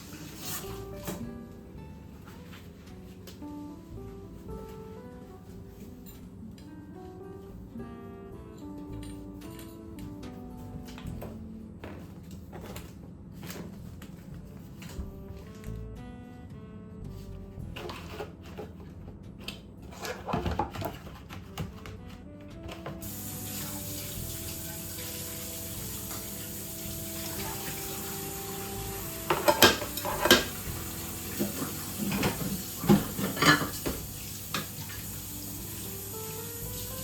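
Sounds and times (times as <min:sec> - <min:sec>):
soft background music: 0:00.0 - 0:37.0
tap running into sink: 0:22.7 - 0:37.0
dishes and cutlery clattering: 0:29.3 - 0:30.6, 0:31.4 - 0:34.8.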